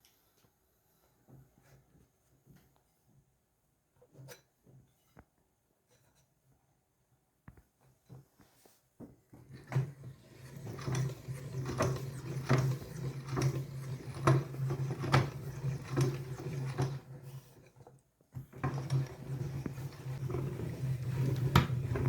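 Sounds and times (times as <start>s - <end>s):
meat grinder motor hum: 9.5s - 17.4s, 18.5s - 22.0s.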